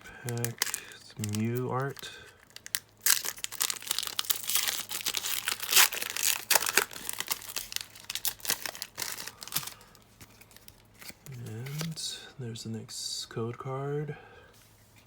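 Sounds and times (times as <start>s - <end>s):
foil wrapper tearing and crinkling: 0.3s - 11.9s.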